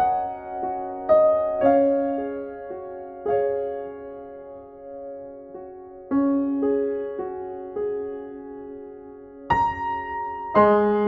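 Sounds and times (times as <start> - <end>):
soft piano music: 0.0 - 11.0.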